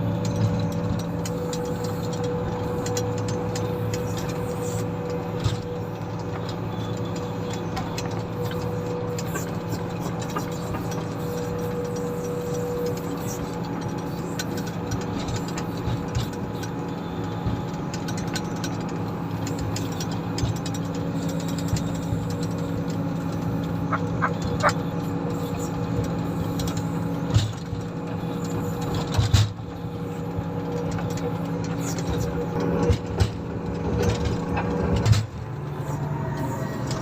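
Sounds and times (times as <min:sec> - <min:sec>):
diesel engine running: 0:00.0 - 0:37.0
short squeaks: 0:00.3 - 0:14.6, 0:23.6 - 0:25.9.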